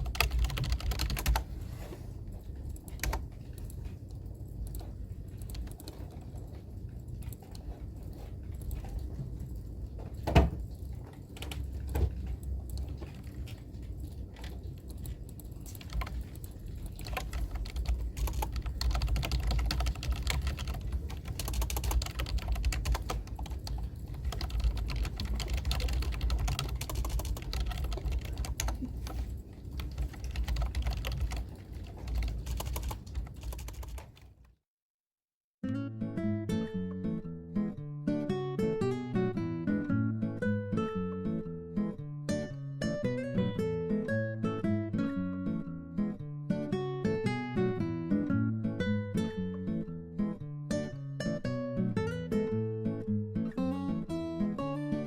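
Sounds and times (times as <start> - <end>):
typing on keyboard: 0.0 - 1.6, 2.4 - 34.4.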